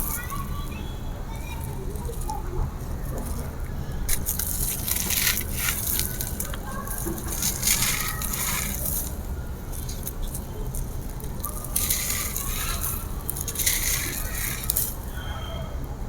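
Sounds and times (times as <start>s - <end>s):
concrete crumbling: 4.1s - 15.2s.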